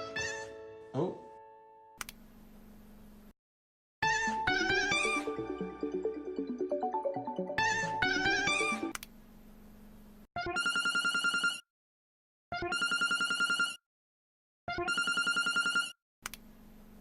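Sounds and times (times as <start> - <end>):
telephone trilling rings: 10.5 - 11.6, 12.7 - 13.8, 14.8 - 16.0.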